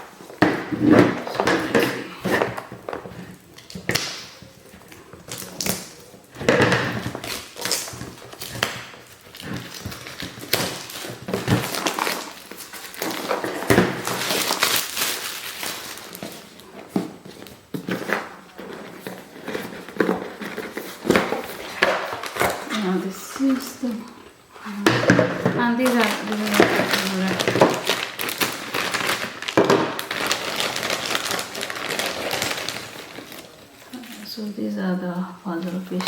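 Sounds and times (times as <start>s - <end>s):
cardboard box rustling and crinkling: 7.0s - 24.0s, 25.6s - 34.3s.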